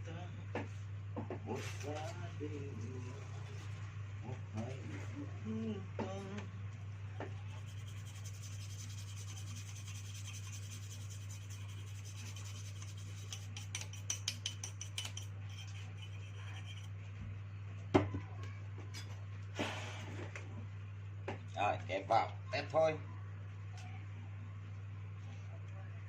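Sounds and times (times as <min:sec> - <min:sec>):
low electrical hum: 0:00.0 - 0:26.0
hands rubbing and scraping: 0:07.5 - 0:16.9
sharp clicks and scrapes: 0:10.2 - 0:16.9.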